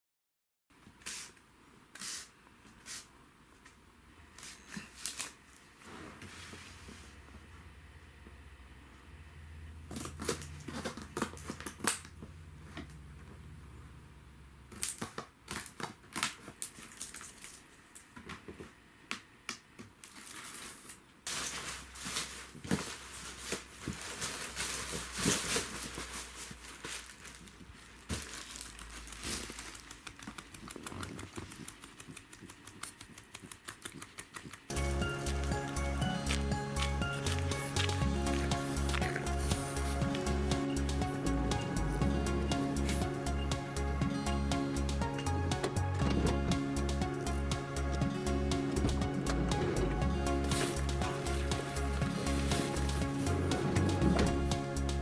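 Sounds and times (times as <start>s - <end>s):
crinkling and rustling of handling: 0.8s - 7.6s, 9.9s - 13.4s, 14.7s - 43.9s, 45.0s - 55.0s
low steady hum: 21.3s - 55.0s.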